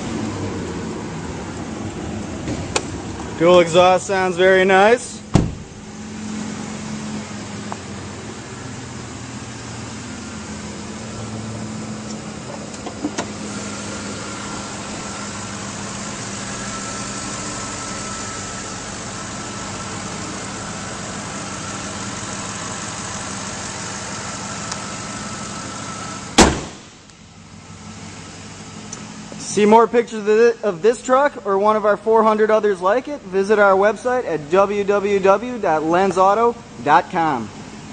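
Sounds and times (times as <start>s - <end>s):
truck engine idling: 0.0s - 36.9s
sharp thump: 5.3s - 5.8s, 26.4s - 27.0s.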